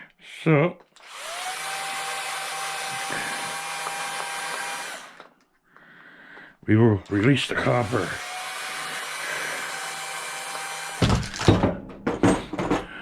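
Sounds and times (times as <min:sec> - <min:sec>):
power tool motor whining: 0:01.0 - 0:05.4, 0:07.0 - 0:11.3.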